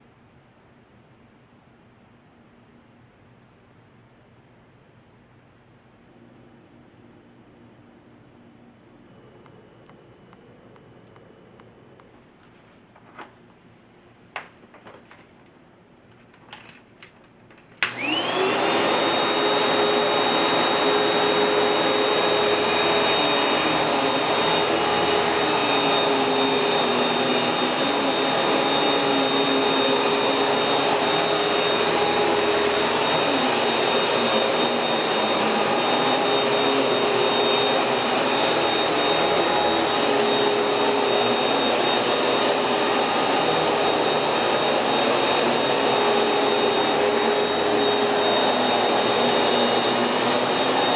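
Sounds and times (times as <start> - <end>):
vacuum cleaner switch click: 17.8 - 18.1
vacuum cleaner motor whining: 17.8 - 50.9.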